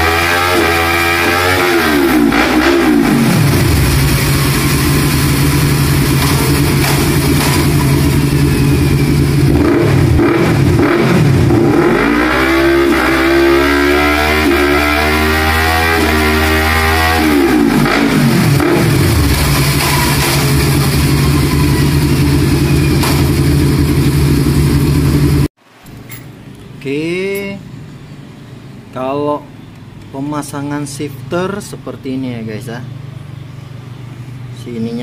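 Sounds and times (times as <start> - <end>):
motorcycle engine revving: 0.0 - 25.5.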